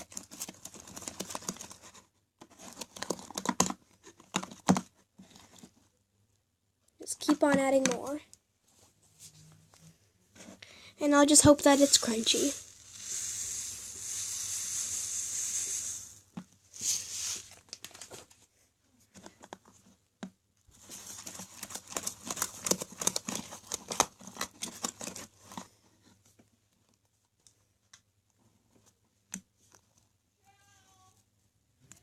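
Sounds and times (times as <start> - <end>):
steady hiss: 11.1 - 17.7.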